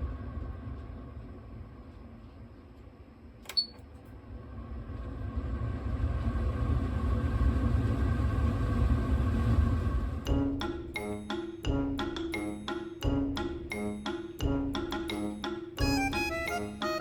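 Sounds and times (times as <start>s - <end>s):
extractor fan hum and whir: 0.0s - 12.1s.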